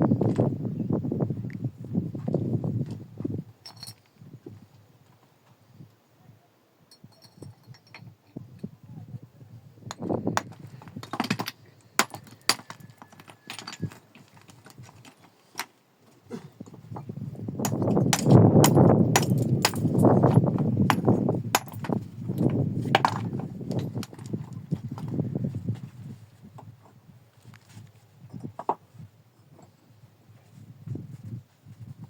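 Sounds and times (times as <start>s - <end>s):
stones knocking together: 9.9s - 15.7s, 16.6s - 25.2s
rocks scraping and rubbing: 9.9s - 30.6s.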